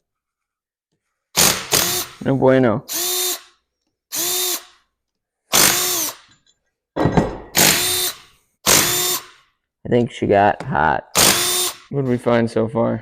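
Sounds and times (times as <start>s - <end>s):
power drill whine: 4.2s - 4.7s, 7.6s - 9.4s.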